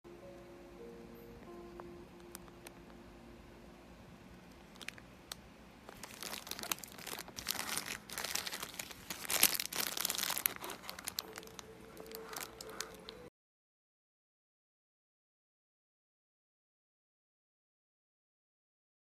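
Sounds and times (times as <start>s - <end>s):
packaging crinkling: 4.5s - 13.3s.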